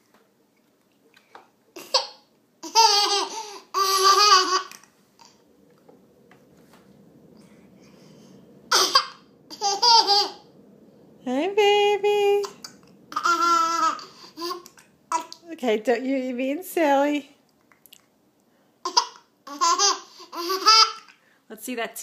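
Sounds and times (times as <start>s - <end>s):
baby laughing and squealing: 1.8s - 5.4s, 8.7s - 10.5s, 12.5s - 15.4s, 18.8s - 21.1s.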